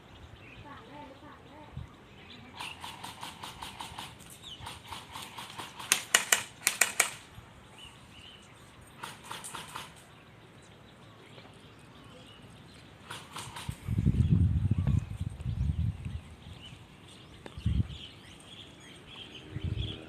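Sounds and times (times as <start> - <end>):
airsoft guns firing: 2.6 - 7.3.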